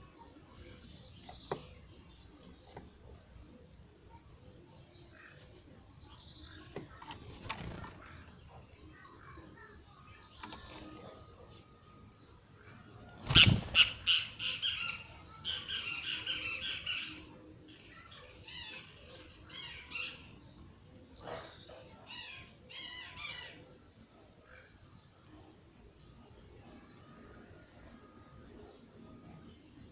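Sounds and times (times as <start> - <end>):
birds squawking: 13.2 - 17.3.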